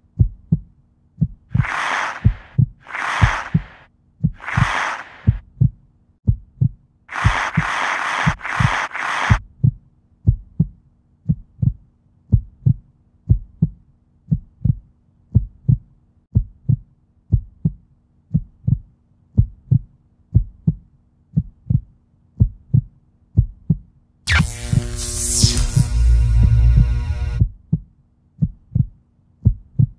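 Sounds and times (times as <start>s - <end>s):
heartbeat thumps: 0.0s - 8.8s, 9.4s - 20.8s, 21.4s - 29.9s
hissing noise: 1.6s - 3.8s, 4.4s - 5.4s, 7.1s - 9.4s, 24.3s - 27.4s
low steady hum: 24.3s - 27.4s.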